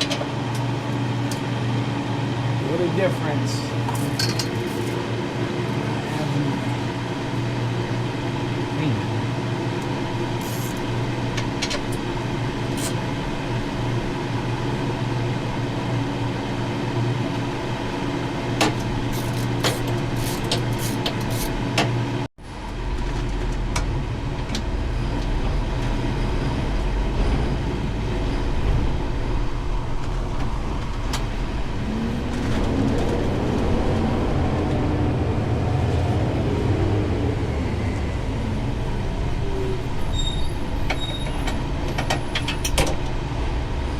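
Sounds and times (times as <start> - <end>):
mechanical hum with low drone: 0.0 - 43.9
deep low rumble: 22.4 - 40.8.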